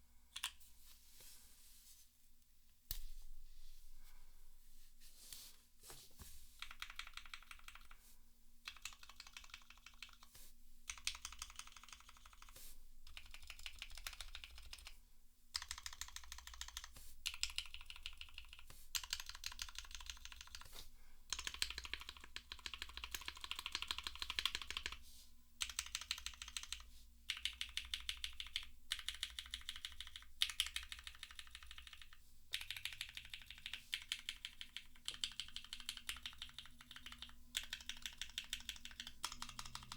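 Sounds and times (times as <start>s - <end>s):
mechanical keyboard typing: 6.6s - 8.0s, 8.7s - 10.3s, 10.9s - 14.9s, 15.6s - 20.7s, 21.3s - 25.0s, 25.6s - 39.9s.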